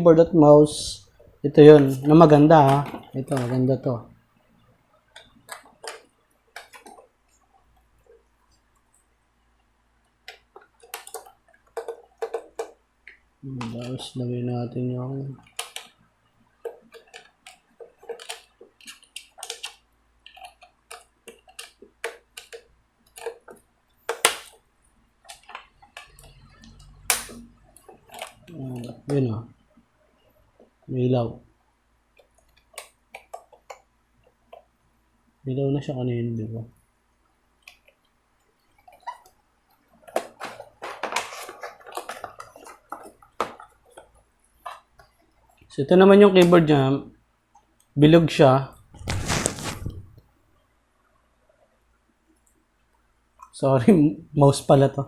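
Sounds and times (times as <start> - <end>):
loud plastic snap: 24.1 - 24.6, 27.0 - 27.4
plastic packaging crinkling: 39.9 - 44.8, 48.8 - 50.2.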